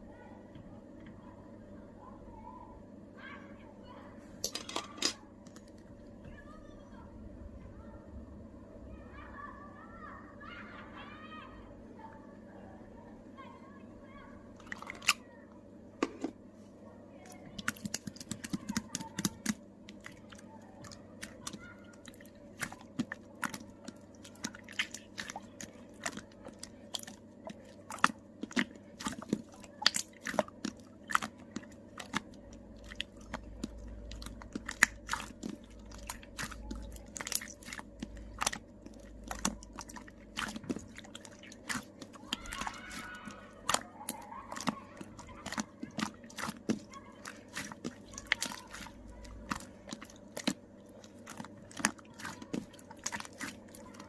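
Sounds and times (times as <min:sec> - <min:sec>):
slime clicking and crackling: 0:17.3 - 0:54.0.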